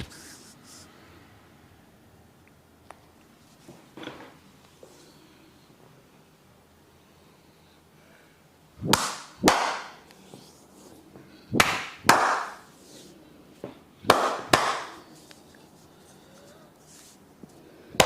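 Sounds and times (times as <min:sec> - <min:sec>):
hand slaps on body: 0:08.9 - 0:10.0, 0:11.6 - 0:12.7.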